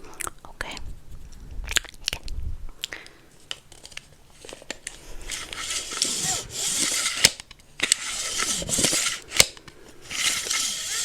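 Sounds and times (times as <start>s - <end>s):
scraping against microphone: 5.2s - 7.3s, 8.0s - 9.3s.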